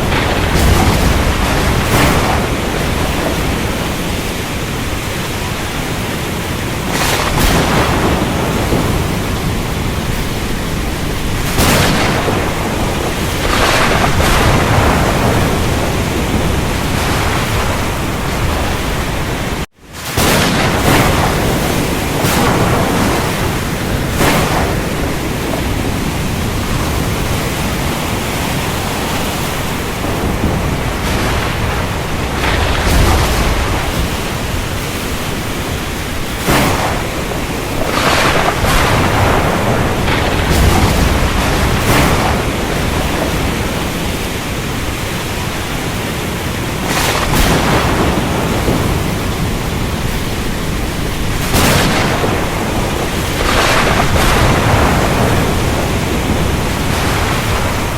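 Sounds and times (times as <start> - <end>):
steady rain hiss: 0.0 - 57.9
thunder rumbling: 0.0 - 57.9.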